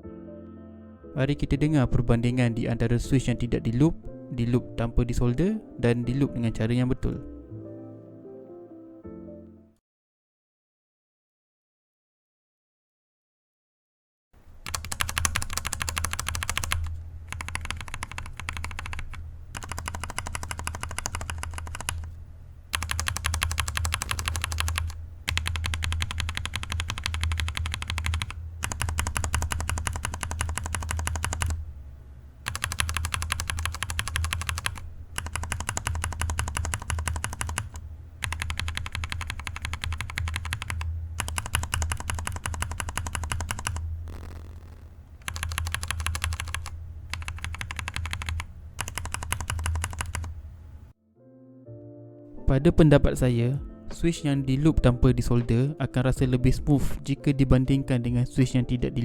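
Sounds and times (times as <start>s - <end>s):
steady low hum: 14.4s - 51.0s
mechanical keyboard typing: 14.6s - 22.1s, 22.7s - 31.6s, 32.4s - 50.3s.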